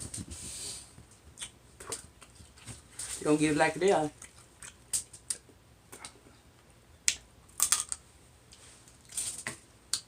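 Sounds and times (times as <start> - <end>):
eating clicks and smacks: 1.4 - 2.5, 4.2 - 6.2.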